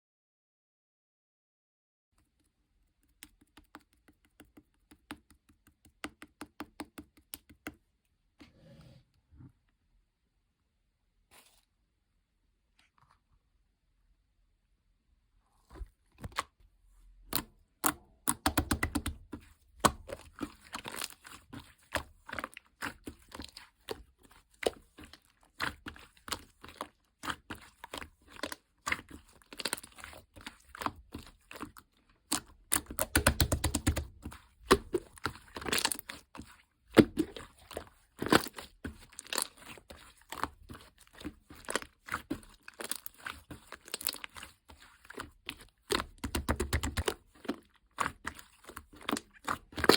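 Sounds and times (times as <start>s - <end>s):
slime squishing and popping: 17.3s - 49.9s.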